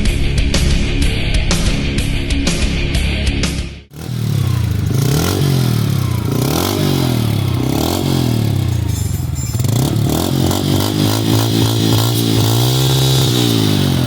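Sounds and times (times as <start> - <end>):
rock music: 0.0 - 14.0
motorcycle engine revving: 3.9 - 14.0.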